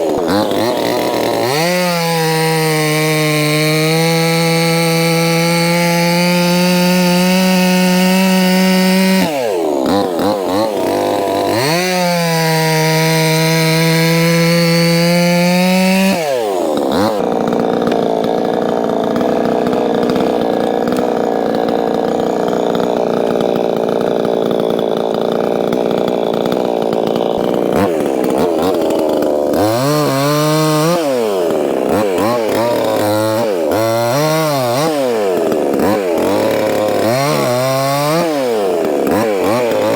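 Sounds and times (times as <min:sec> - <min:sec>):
chainsaw cutting log: 0:00.0 - 0:39.9
chainsaw revving: 0:00.0 - 0:39.9.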